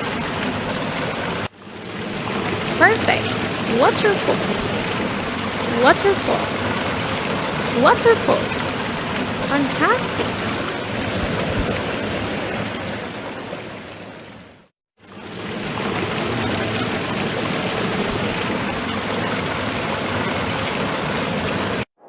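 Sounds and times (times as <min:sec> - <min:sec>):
waterfall rushing: 0:00.0 - 0:13.8.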